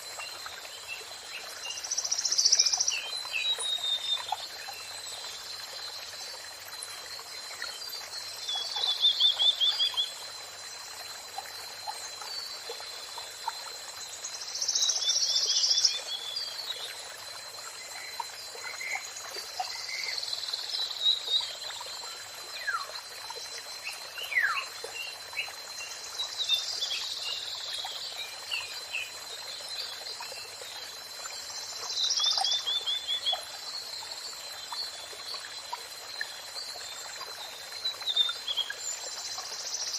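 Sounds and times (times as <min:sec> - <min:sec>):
running water: 0:00.0 - 0:39.9
songbird singing with trills: 0:24.2 - 0:25.5.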